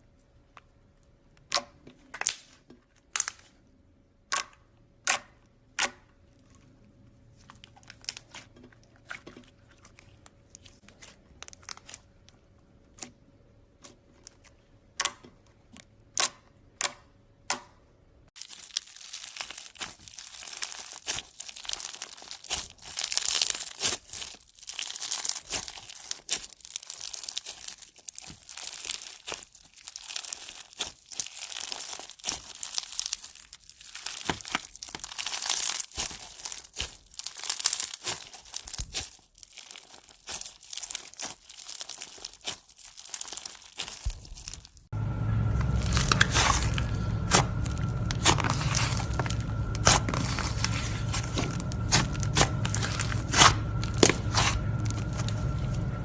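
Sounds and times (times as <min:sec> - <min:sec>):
crunchy material crackling: 0:18.3 - 0:56.0
faint steady hum: 0:43.5 - 0:56.0.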